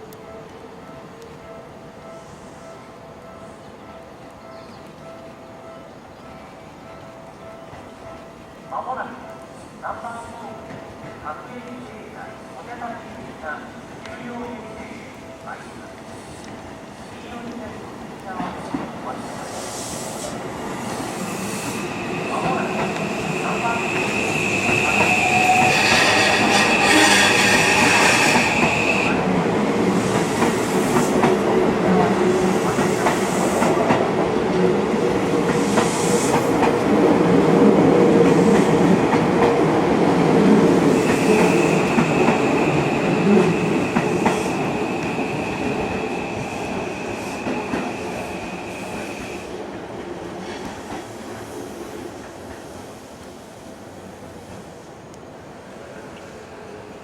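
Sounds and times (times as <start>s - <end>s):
high wheel squeal: 21.3s - 29.2s.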